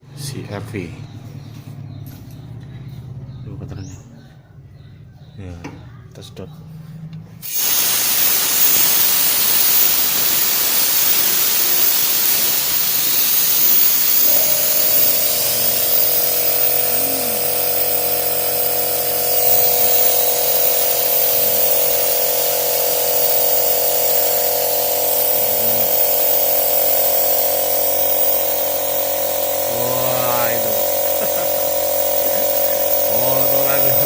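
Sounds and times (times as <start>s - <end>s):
machine whine: 7.4s - 34.0s
steady hiss: 7.4s - 34.0s.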